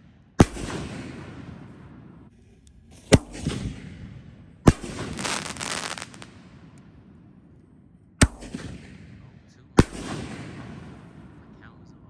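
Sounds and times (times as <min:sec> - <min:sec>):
firework sharp bang: 0:00.4 - 0:01.5, 0:03.0 - 0:04.1, 0:04.7 - 0:06.4
crackling hiss: 0:04.7 - 0:06.8.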